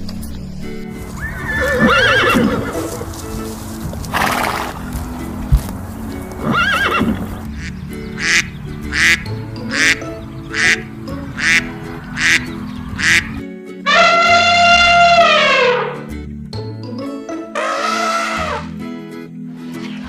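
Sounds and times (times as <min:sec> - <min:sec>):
children's music: 0:00.0 - 0:20.0
horse whinny: 0:01.2 - 0:03.1, 0:04.1 - 0:04.8, 0:06.4 - 0:07.3, 0:17.6 - 0:18.8
duck quacking: 0:07.5 - 0:16.0, 0:17.6 - 0:18.7
high-pitched animal call: 0:13.9 - 0:16.1, 0:17.5 - 0:18.7.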